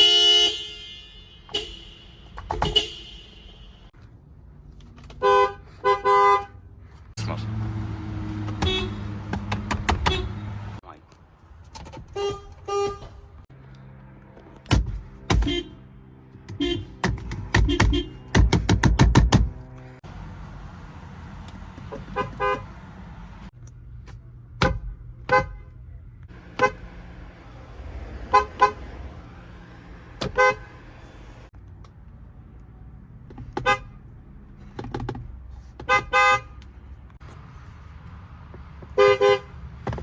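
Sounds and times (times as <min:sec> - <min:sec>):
car horns honking: 0:00.0 - 0:04.0, 0:05.1 - 0:06.7, 0:07.4 - 0:10.8, 0:12.0 - 0:13.4, 0:15.2 - 0:18.6, 0:21.8 - 0:23.4, 0:24.6 - 0:27.2, 0:28.0 - 0:31.4, 0:33.4 - 0:34.1, 0:35.8 - 0:36.9, 0:38.9 - 0:40.0.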